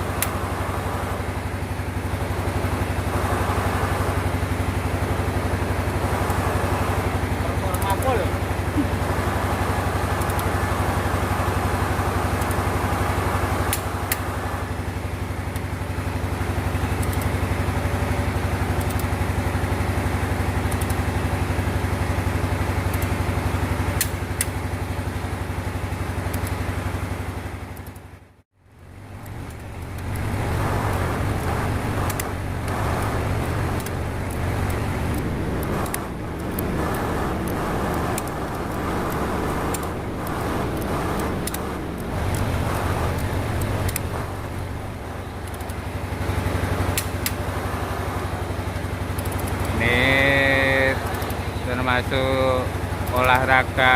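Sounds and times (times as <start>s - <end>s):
motor humming: 0.0s - 23.2s, 26.0s - 53.7s
sharp clicks: 10.0s - 10.6s, 13.6s - 14.3s, 18.7s - 19.1s, 24.0s - 24.6s, 29.1s - 45.8s, 46.9s - 47.4s, 49.1s - 49.7s.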